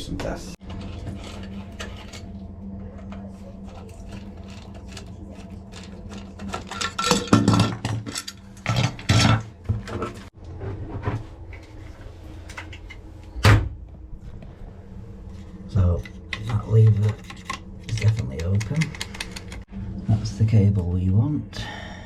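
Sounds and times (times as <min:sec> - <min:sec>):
steady low hum: 0:00.0 - 0:22.0
hand tools clattering: 0:03.0 - 0:10.3.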